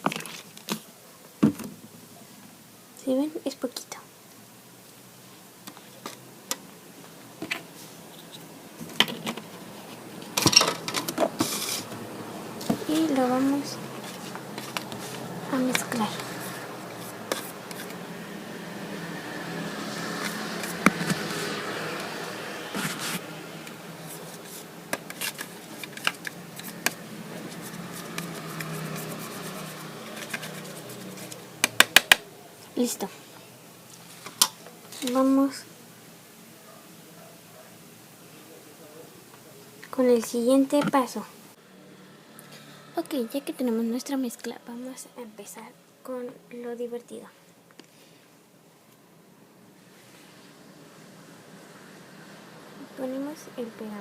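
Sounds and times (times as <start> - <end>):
spoon scraping container: 14.0 - 18.0, 24.1 - 31.4.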